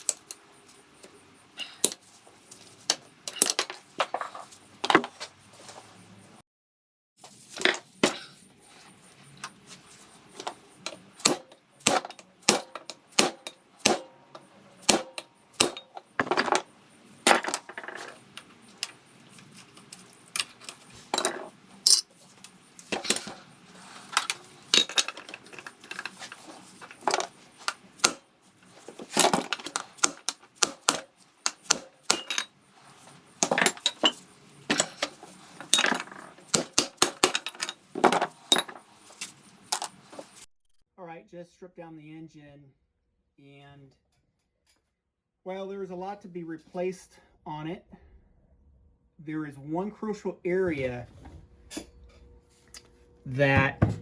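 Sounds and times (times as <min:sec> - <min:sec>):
metal engine parts clattering: 0:15.1 - 0:30.3, 0:31.5 - 0:40.0.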